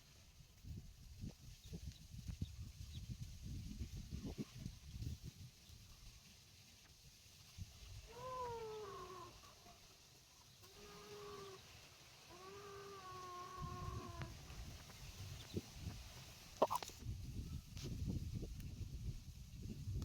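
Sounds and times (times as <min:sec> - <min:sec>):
animal calling in drawn-out cries: 0:08.0 - 0:09.5, 0:10.6 - 0:14.6.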